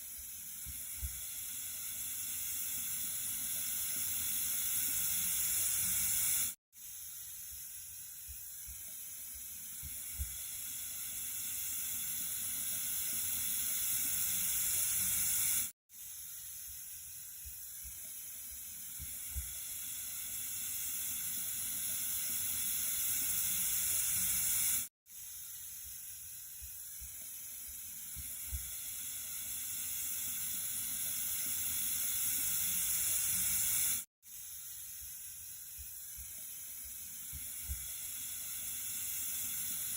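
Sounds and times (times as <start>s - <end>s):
running water hiss: 0.0s - 39.9s.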